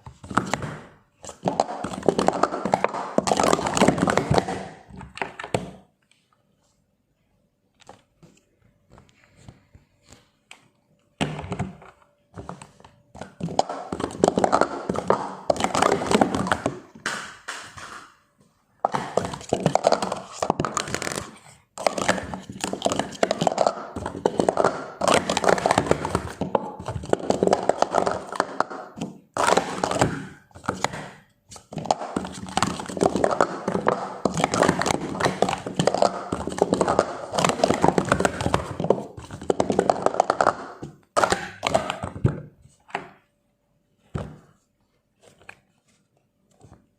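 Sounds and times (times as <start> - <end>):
plastic cups clattering: 0.0 - 5.8, 11.2 - 18.2, 18.8 - 43.2.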